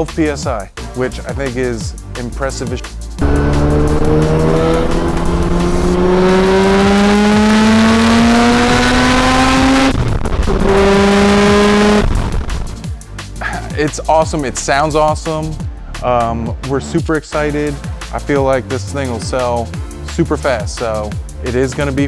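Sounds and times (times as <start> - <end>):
rotary engine revving: 3.2 - 12.8.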